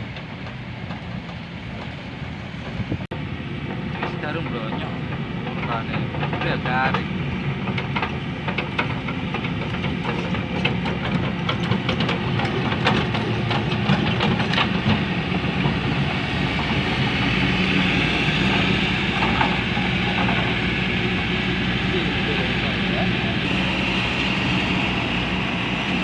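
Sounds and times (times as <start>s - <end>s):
heavy diesel machinery running: 0.0s - 26.0s
metallic clanks and rattles: 3.7s - 15.9s, 18.5s - 21.3s.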